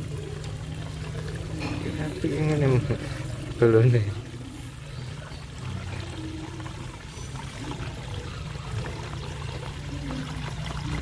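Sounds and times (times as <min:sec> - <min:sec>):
droplets ticking: 0:00.0 - 0:11.0
water pouring and splashing: 0:00.0 - 0:11.0.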